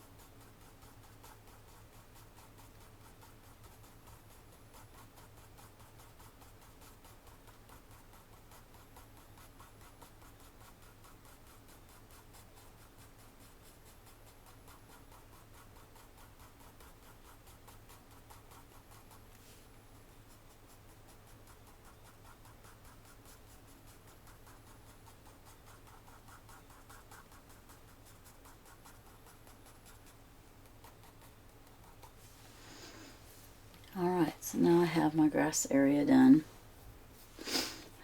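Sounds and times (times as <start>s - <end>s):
pencil scratching on paper: 0.0s - 33.4s
low steady hum: 16.3s - 38.0s.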